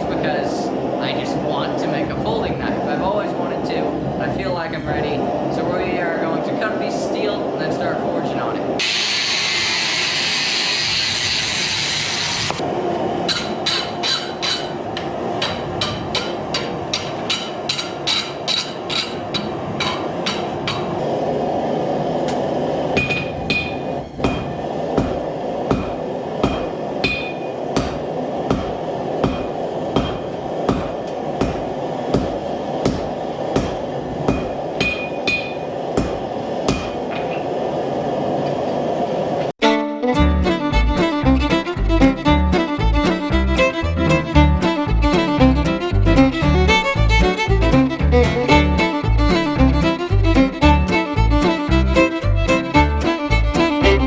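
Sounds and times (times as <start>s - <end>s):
hammer striking steel on anvil: 13.3s - 21.0s, 25.7s - 28.6s.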